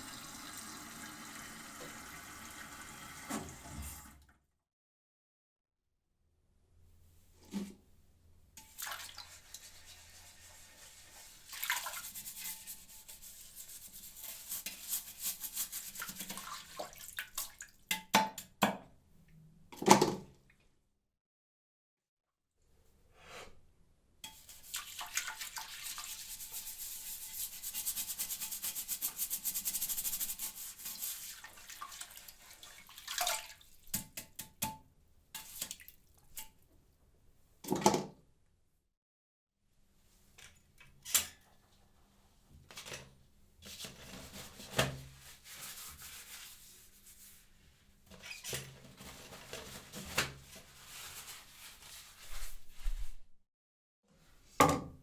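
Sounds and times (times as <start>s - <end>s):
toilet brush scrubbing bowl: 8.6s - 18.6s, 24.2s - 34.7s, 35.4s - 36.4s, 43.6s - 53.2s.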